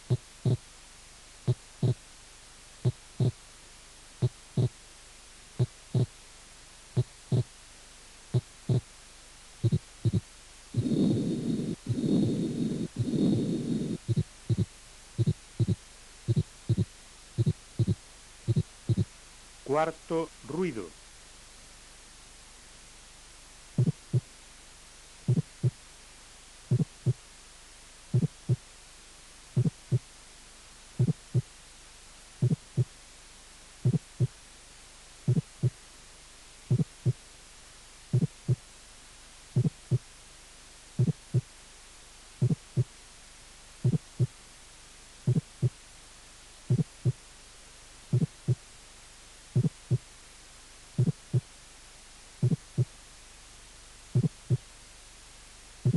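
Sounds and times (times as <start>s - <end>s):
heartbeat through stethoscope: 0.0s - 0.7s, 1.4s - 2.1s, 2.8s - 3.4s, 4.2s - 4.8s, 5.5s - 6.2s, 6.9s - 7.6s, 8.3s - 8.9s, 9.6s - 19.2s, 23.7s - 24.4s, 25.2s - 25.8s, 26.7s - 27.3s, 28.1s - 28.7s, 29.5s - 30.1s, 31.0s - 31.5s, 32.4s - 33.0s, 33.8s - 34.4s, 35.2s - 35.8s, 36.6s - 37.2s, 38.1s - 38.7s, 39.5s - 40.1s, 41.0s - 41.5s, 42.4s - 43.0s, 43.8s - 44.4s, 45.2s - 45.8s, 46.7s - 47.3s, 48.1s - 48.7s, 49.5s - 50.1s, 51.0s - 51.6s, 52.4s - 53.0s, 54.1s - 54.7s.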